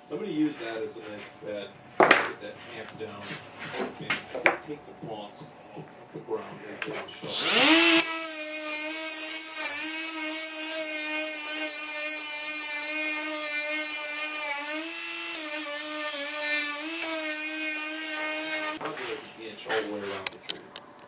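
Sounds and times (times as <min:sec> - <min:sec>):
power tool motor whining: 0:07.2 - 0:11.3.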